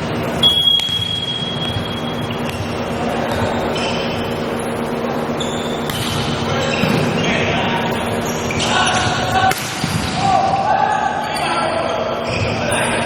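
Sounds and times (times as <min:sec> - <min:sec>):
crowd noise and voices echoing: 0:00.0 - 0:13.0
volleyball being hit: 0:00.4 - 0:01.9.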